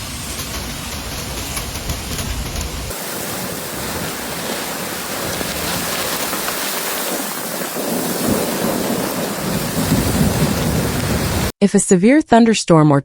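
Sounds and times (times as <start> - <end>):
heavy rain: 0.0 - 11.5
running water: 2.9 - 11.5.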